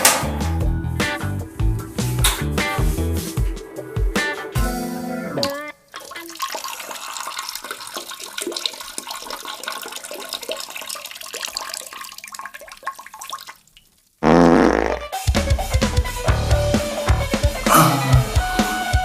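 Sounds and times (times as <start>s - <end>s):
comic fart sound effect: 14.2s - 15.2s.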